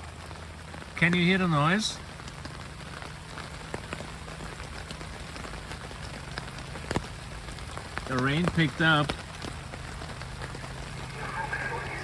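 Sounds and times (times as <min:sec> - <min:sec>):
rain drops ticking on fabric: 0:00.0 - 0:12.0
rain hiss on tarp: 0:00.0 - 0:12.0
steady low hum: 0:09.4 - 0:12.0.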